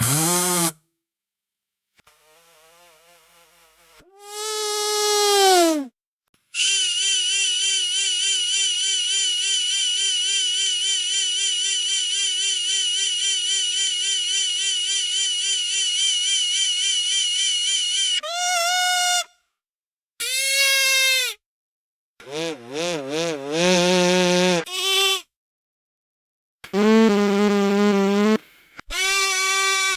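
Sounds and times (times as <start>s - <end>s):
bee buzzing: 2.2s - 5.9s, 6.6s - 18.2s.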